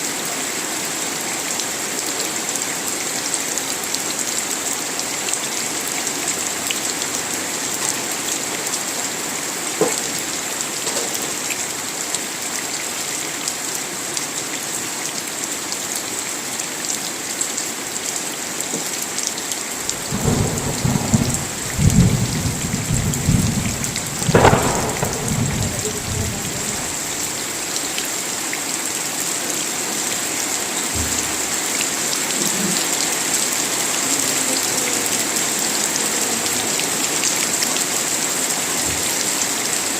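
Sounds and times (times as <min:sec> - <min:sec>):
steady rain falling: 0:00.0 - 0:39.9
thunderclap: 0:19.9 - 0:27.4.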